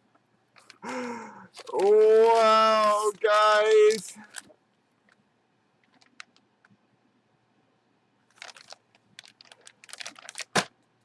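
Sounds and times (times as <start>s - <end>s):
packaging rustling and crinkling: 1.5s - 5.2s, 5.8s - 6.4s, 8.2s - 10.7s.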